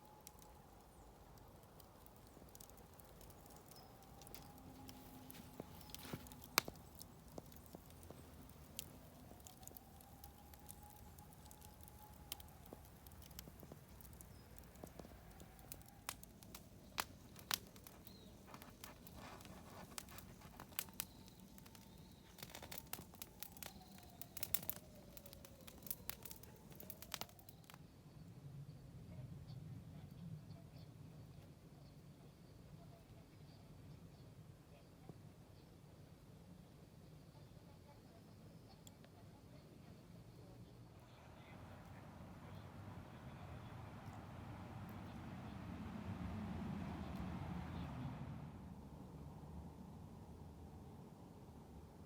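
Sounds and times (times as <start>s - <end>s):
campfire crackling and popping: 0.0s - 27.8s.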